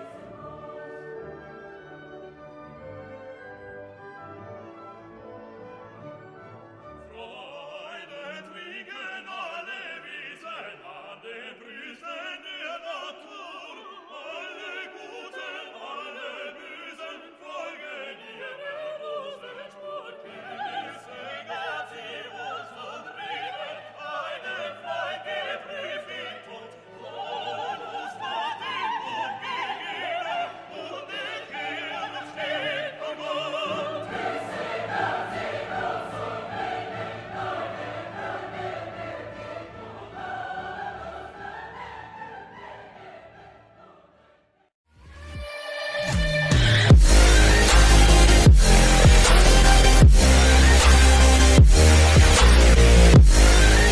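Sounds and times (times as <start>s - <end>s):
operatic singing voices: 0.0s - 2.3s, 7.0s - 53.9s
orchestra playing: 0.0s - 7.2s, 46.9s - 53.9s.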